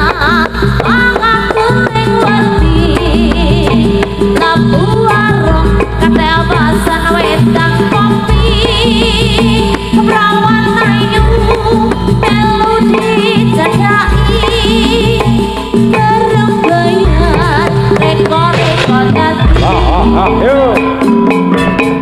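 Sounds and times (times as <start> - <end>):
person singing with vibrato: 0.0 - 21.2
drums: 0.0 - 22.0.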